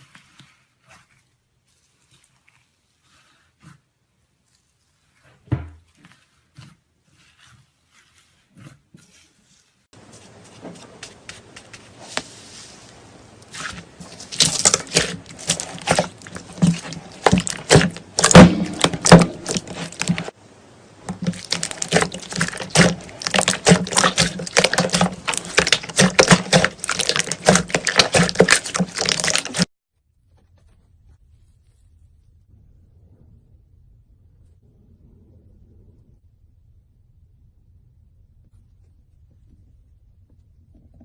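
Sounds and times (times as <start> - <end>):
slime popping and crackling: 13.5 - 20.4, 21.1 - 29.7.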